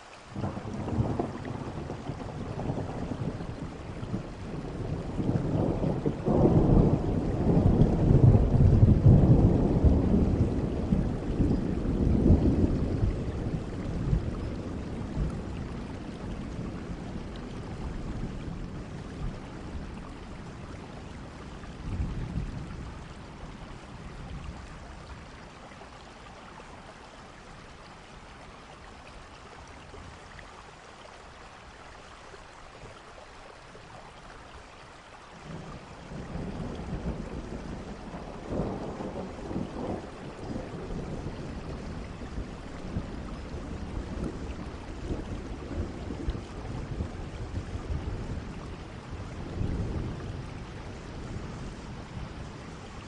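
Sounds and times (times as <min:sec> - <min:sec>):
steady rain: 0:00.0 - 0:53.0
rolling thunder: 0:00.4 - 0:25.2, 0:35.5 - 0:53.0.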